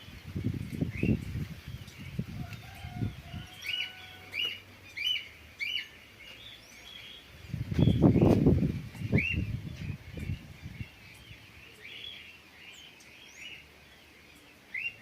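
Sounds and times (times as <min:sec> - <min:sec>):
wind buffeting microphone: 0:00.0 - 0:04.2, 0:07.3 - 0:11.5
bird chirping: 0:00.0 - 0:15.0.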